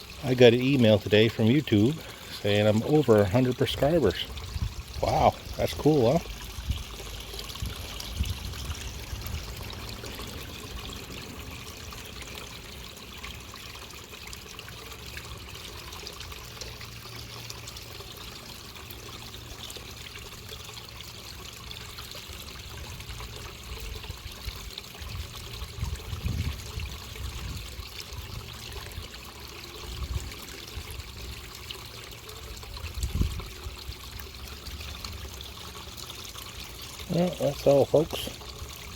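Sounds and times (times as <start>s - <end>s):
water trickling into pond: 0.0s - 38.9s.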